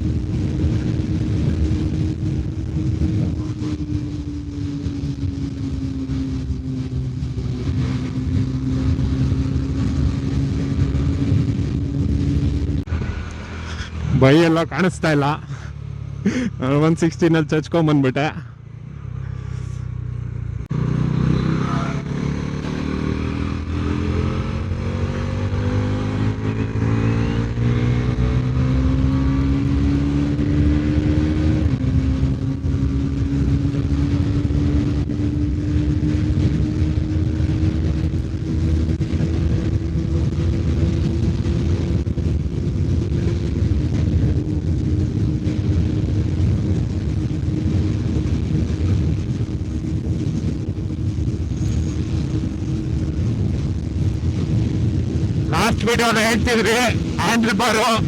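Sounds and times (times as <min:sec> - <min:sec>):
heavy wind rush: 0:00.0 - 0:15.7, 0:49.2 - 0:58.0
motorcycle engine revving at high speed: 0:00.0 - 0:58.0.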